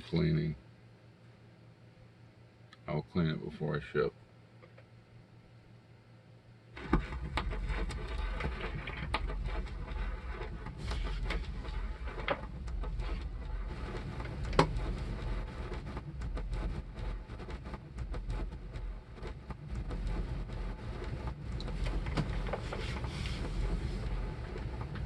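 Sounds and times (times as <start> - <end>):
low turntable rumble: 6.7 - 25.0
stylus thump on record: 6.8 - 25.0
vinyl crackle and pops: 6.8 - 25.0.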